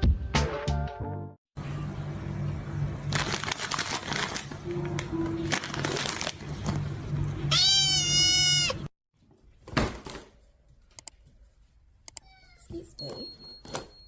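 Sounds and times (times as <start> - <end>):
cat meowing: 7.5 - 8.9.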